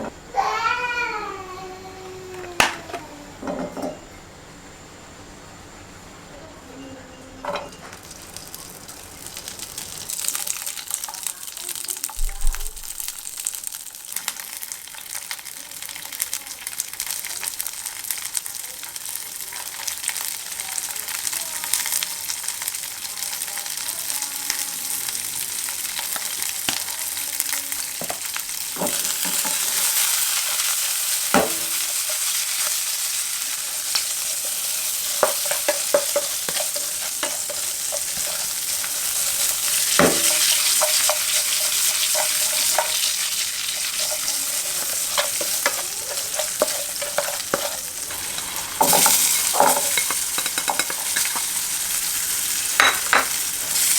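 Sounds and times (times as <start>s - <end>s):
steak sizzling in a pan: 7.9s - 53.9s.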